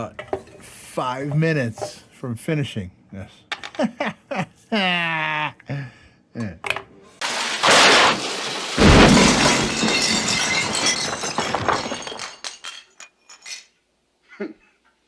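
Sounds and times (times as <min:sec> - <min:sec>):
crash of hard pieces: 0:07.2 - 0:13.8
glassy clinking clatter: 0:07.7 - 0:13.7.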